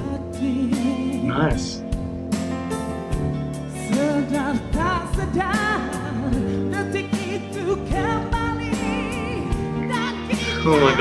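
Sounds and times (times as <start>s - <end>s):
voices singing duet: 8.1s - 11.0s.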